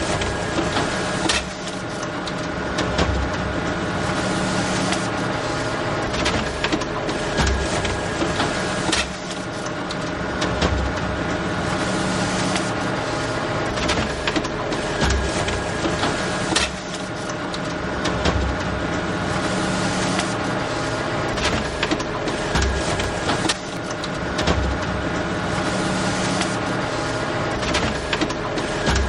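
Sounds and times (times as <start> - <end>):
photocopier humming: 11.2 - 29.0
sharp mechanical clicks: 21.3 - 24.8.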